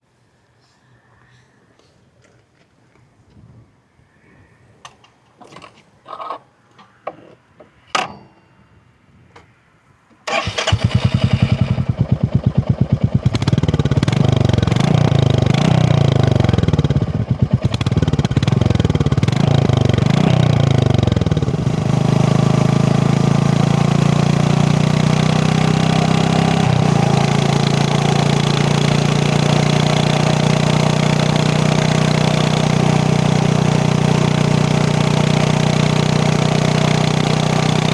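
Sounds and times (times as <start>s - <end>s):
motorcycle engine revving and idling: 10.3s - 37.9s.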